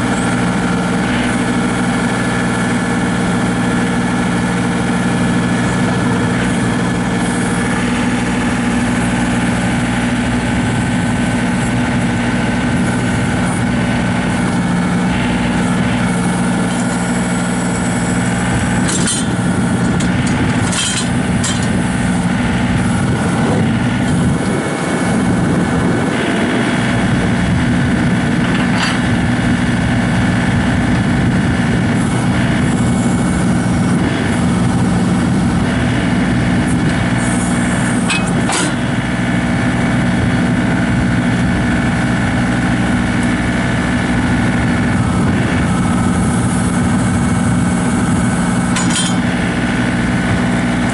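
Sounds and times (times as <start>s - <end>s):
tractor diesel engine running: 0.0s - 50.9s
short clanks: 18.8s - 21.8s, 28.5s - 29.1s, 38.0s - 38.8s, 48.7s - 49.3s.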